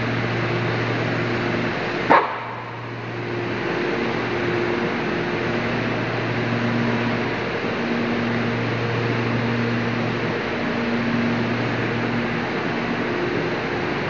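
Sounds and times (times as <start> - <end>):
dryer blower humming: 0.0 - 14.0
dog bark: 2.1 - 2.8.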